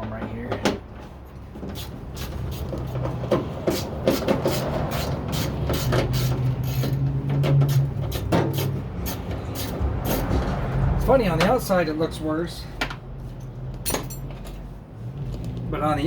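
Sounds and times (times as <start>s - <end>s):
metal door parts clicking and scraping: 0.0s - 10.7s, 13.4s - 14.7s.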